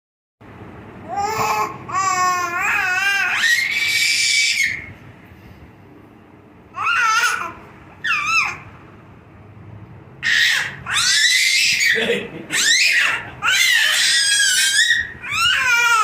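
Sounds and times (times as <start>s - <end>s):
high-pitched vocal cries: 10.2s - 16.0s.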